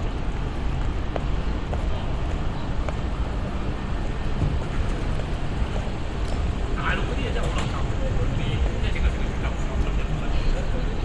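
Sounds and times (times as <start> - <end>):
traffic rumble: 0.0 - 11.0.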